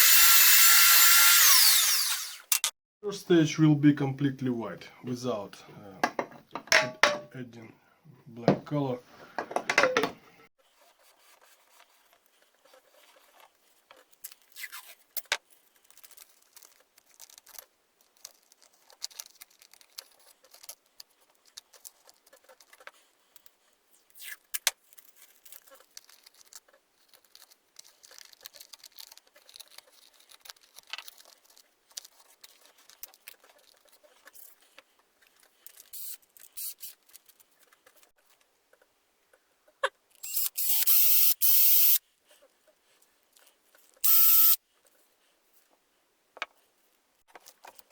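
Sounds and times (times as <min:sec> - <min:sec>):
scratchy brush strokes: 0:10.6 - 0:14.1.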